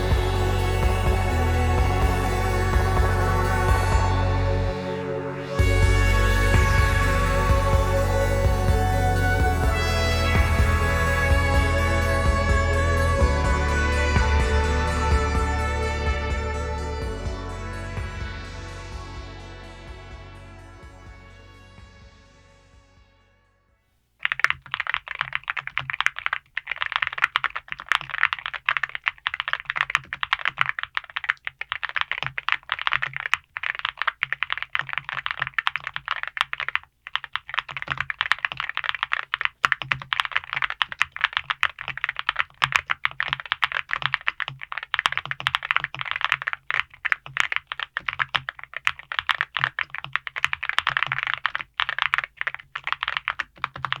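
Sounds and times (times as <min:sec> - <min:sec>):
mechanical keyboard typing: 0:24.2 - 0:54.0.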